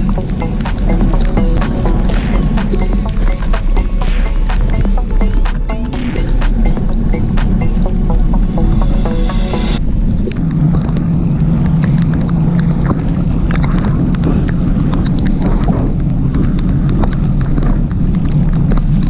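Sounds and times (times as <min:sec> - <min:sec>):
background music: 0:00.0 - 0:09.9
steady low hum: 0:00.0 - 0:11.8.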